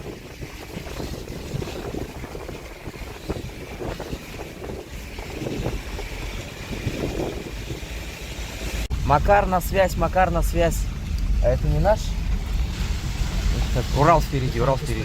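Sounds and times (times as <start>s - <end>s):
car engine and tyres rumbling: 0.0s - 15.0s
wind rushing through windows: 0.0s - 15.0s.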